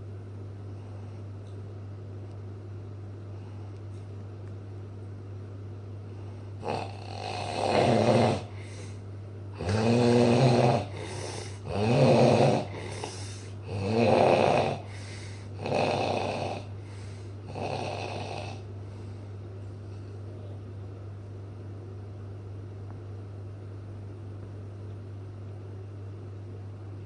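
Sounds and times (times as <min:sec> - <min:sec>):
loud snoring: 0:06.6 - 0:08.9, 0:09.6 - 0:18.7.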